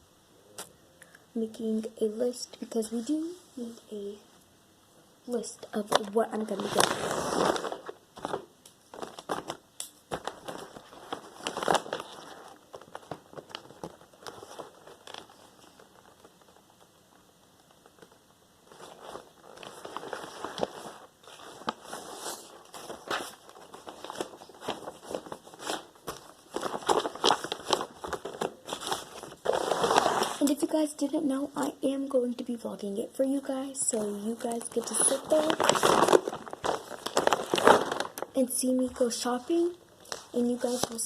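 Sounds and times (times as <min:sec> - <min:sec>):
paper crinkling rustles: 0:05.8 - 0:30.6, 0:33.9 - 0:38.4, 0:39.0 - 0:41.0.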